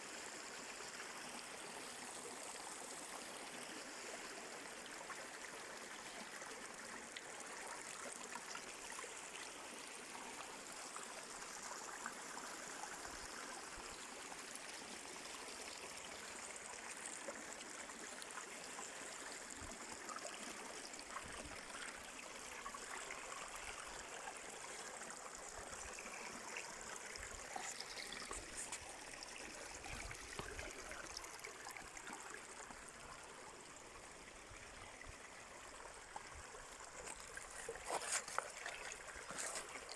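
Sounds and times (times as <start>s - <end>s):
stream flowing: 0.0s - 39.9s.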